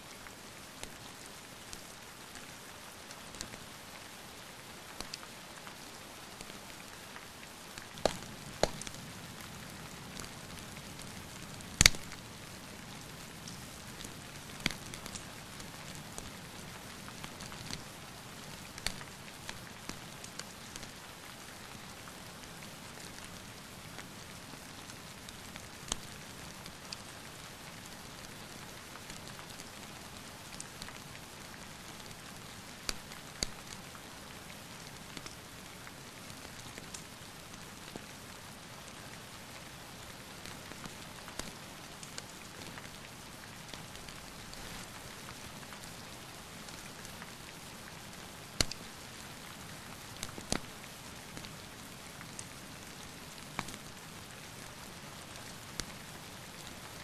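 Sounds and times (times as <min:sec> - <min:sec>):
rain falling: 0:00.0 - 0:57.0
sharp clicks and pops: 0:08.0 - 0:09.0, 0:11.8 - 0:12.2, 0:48.6 - 0:48.8.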